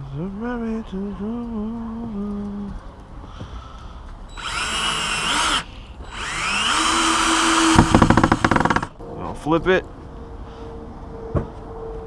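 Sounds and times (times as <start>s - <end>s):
power drill driving screws: 4.3s - 9.0s.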